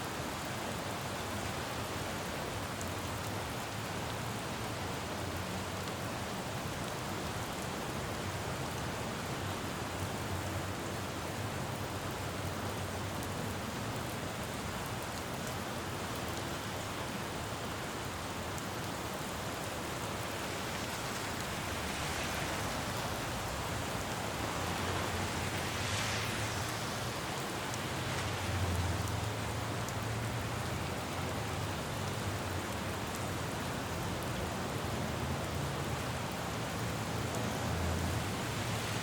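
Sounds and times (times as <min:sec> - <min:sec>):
rain falling on road: 0:00.0 - 0:39.0
tyre hiss on wet street: 0:00.0 - 0:39.0
low traffic hum: 0:09.4 - 0:39.0.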